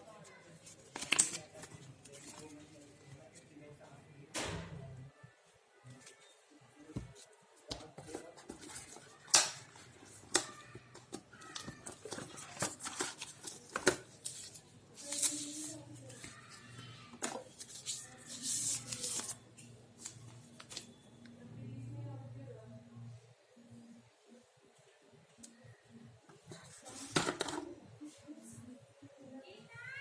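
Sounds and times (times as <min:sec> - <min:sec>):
packaging rustling: 0:11.1 - 0:16.5, 0:17.2 - 0:19.4.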